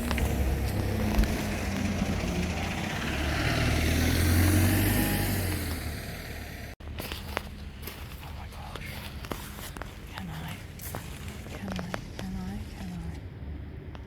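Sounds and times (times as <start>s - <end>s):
vehicle passing by: 0.0s - 6.8s.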